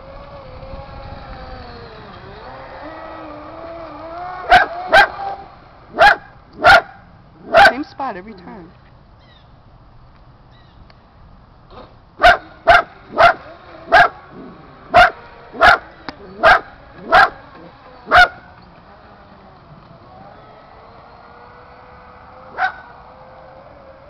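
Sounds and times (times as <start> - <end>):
dog barking: 4.5 - 5.1, 6.0 - 7.8, 12.2 - 14.1, 15.0 - 15.8, 16.4 - 17.4, 18.1 - 18.5, 22.6 - 22.8.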